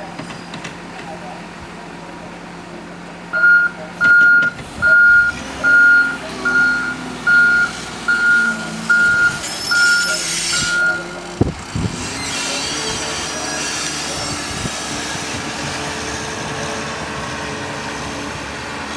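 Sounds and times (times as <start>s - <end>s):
vehicle backup alarm beeping: 3.3s - 11.3s.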